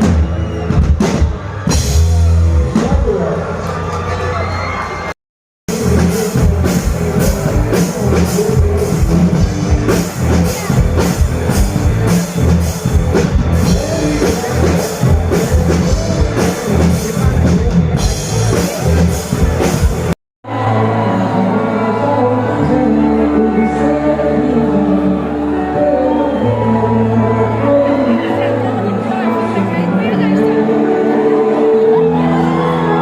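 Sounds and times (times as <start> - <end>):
drum kit beat: 0.0 - 3.3, 5.7 - 20.2
loud band music: 0.0 - 5.1, 5.7 - 33.0.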